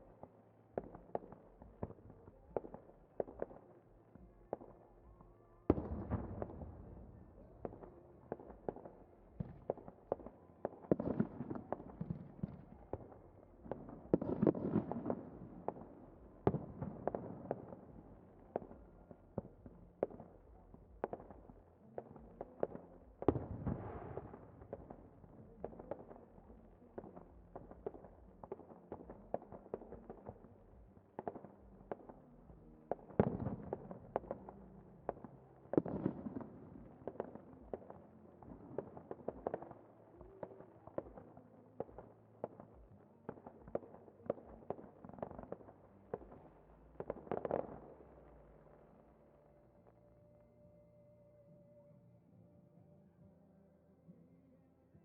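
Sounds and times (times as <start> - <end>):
fireworks cracking and popping: 0.0 - 50.0
firework booms: 5.7 - 18.8, 22.1 - 26.2, 33.0 - 46.4.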